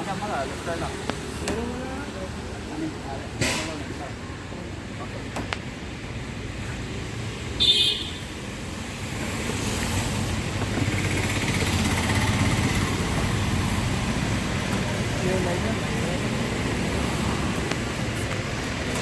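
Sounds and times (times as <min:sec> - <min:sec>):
short high vehicle horn toot: 0:07.6 - 0:08.2
vehicle passing close by: 0:08.6 - 0:19.0.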